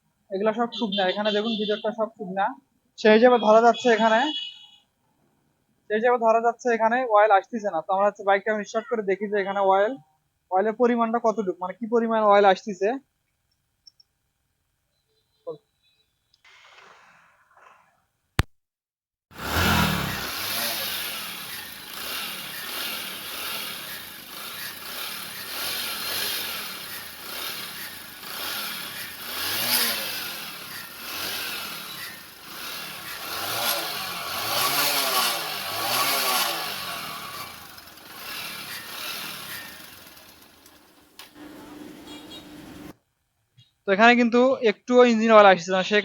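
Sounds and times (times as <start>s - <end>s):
motorcycle engine revving: 19.3s - 42.9s
engine knocking: 19.5s - 41.0s.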